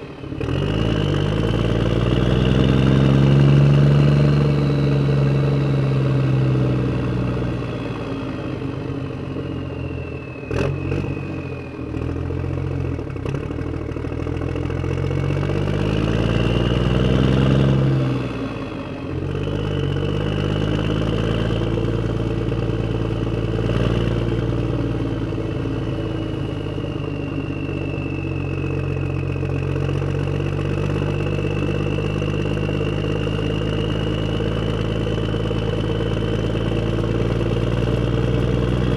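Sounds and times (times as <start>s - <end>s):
tractor engine running: 0.0s - 38.9s
high whine: 14.1s - 38.9s.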